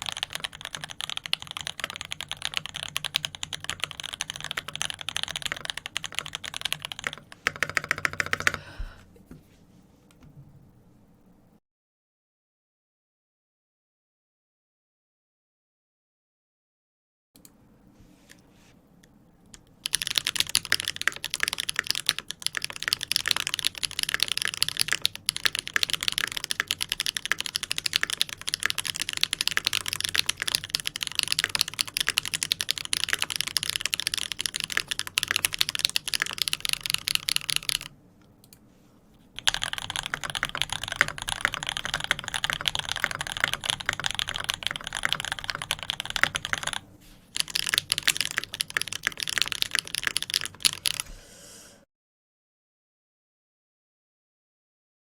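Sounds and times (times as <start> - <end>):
fast mechanical keyboard typing: 0.0 - 8.7, 19.8 - 37.9, 39.4 - 51.0.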